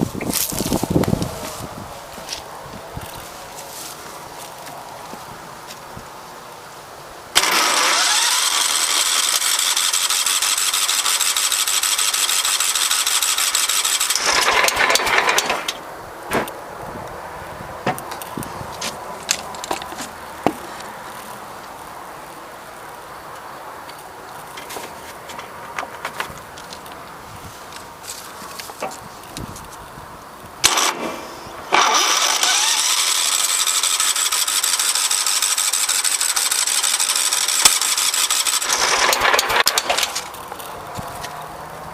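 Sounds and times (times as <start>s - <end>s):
engine cranking with starter: 7.4s - 15.9s, 30.6s - 40.7s.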